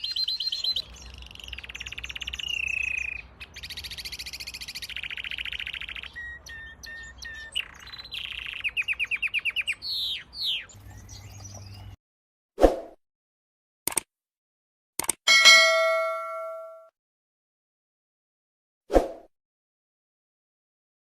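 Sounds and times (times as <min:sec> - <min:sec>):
canary singing: 0:00.0 - 0:12.0.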